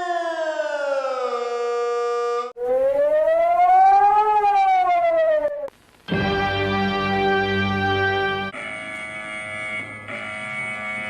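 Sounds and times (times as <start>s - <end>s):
warning siren wail: 0.0s - 5.7s.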